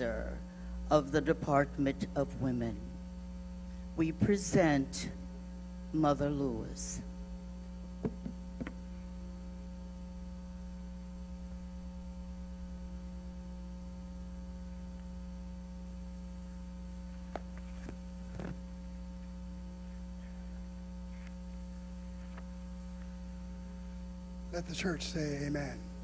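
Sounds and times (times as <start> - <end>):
electrical mains hum: 0.0 - 26.0.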